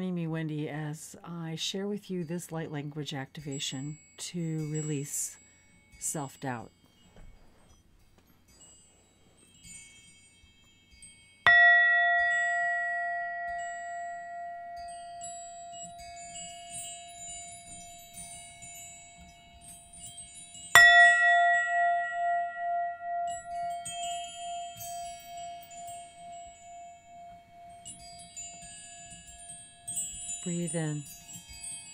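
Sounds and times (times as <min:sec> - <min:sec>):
wind chimes tinkling: 0:02.3 - 0:31.9
bell strike ringing: 0:11.5 - 0:18.1, 0:20.8 - 0:28.6.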